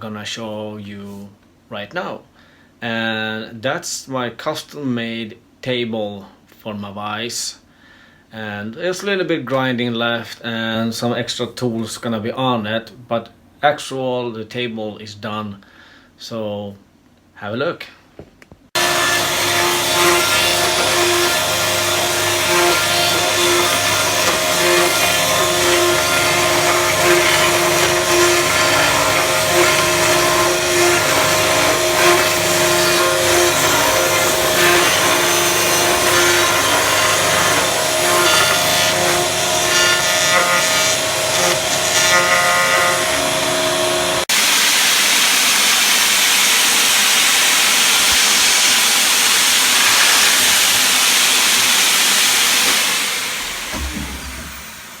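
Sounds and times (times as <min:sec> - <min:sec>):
power tool whining and cutting: 0:18.8 - 0:55.0.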